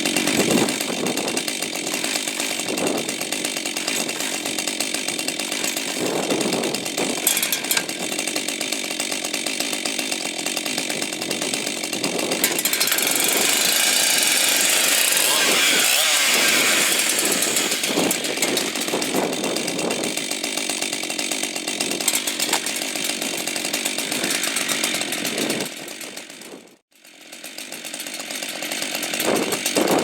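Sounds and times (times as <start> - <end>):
chainsaw engines running: 0.0 - 30.0.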